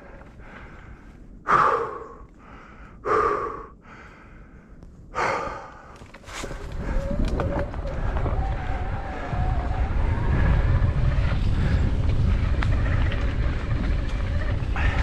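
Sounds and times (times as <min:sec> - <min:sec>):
person breathing hard: 0:00.0 - 0:07.1.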